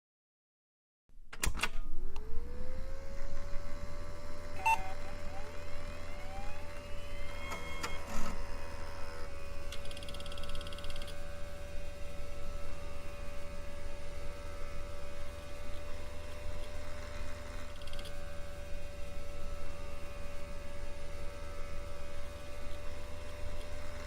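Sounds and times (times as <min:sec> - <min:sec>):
low hum: 0:01.8 - 0:24.0
chirping radio interference: 0:04.4 - 0:09.3
steady electronic tone: 0:04.4 - 0:09.3
rapid high-pitched pulsing: 0:04.5 - 0:09.2.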